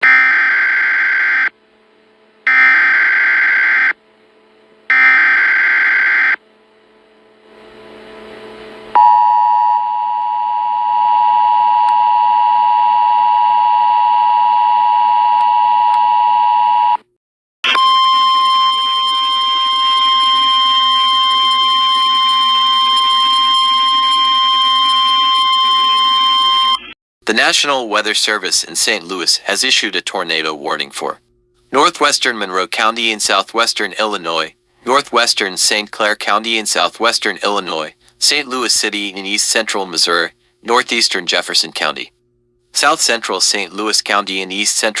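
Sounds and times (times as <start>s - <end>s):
steady distorted alarm tone: 0.0s - 1.6s, 2.3s - 6.5s, 17.7s - 26.9s, 28.0s - 31.1s.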